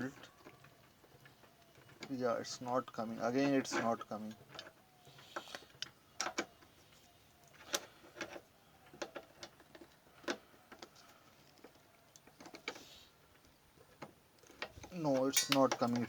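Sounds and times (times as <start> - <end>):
screwdriver clicking on metal bolt: 15.3 - 16.0.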